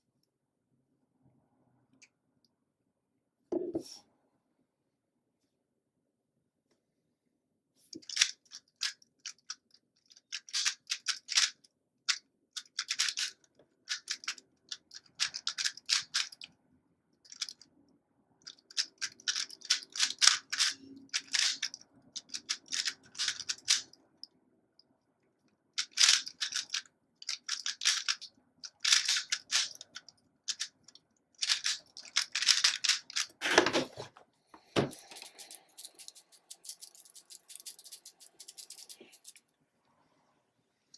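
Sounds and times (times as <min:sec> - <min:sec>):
plastic cube clicking: 0:08.0 - 0:16.5, 0:18.4 - 0:24.0, 0:25.8 - 0:33.4.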